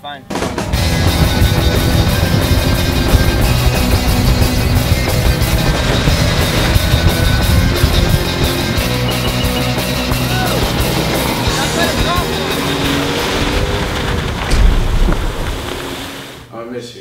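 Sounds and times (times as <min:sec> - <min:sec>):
loud rock music: 0:00.3 - 0:15.6.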